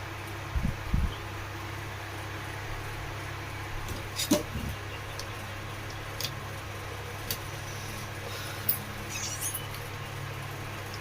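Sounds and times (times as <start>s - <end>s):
steady low hum: 0.0s - 11.0s
brief high squeak: 9.1s - 9.8s.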